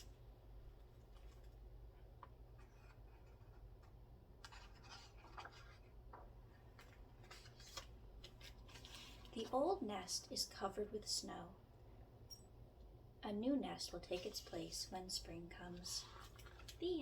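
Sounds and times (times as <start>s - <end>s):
scratchy rustles: 7.2s - 9.6s.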